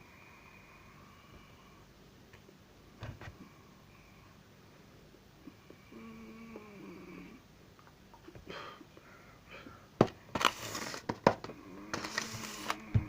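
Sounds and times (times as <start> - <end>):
rustling and crackling noise: 10.1 - 13.0.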